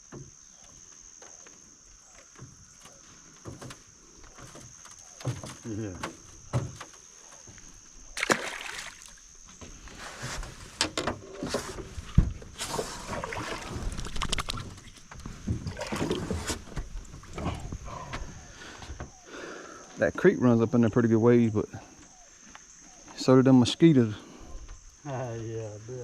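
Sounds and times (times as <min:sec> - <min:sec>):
knocks and rustles in boat: 0:02.1 - 0:07.9, 0:09.4 - 0:19.2
splashy handling noises: 0:08.2 - 0:09.2, 0:12.6 - 0:15.0, 0:15.6 - 0:17.4.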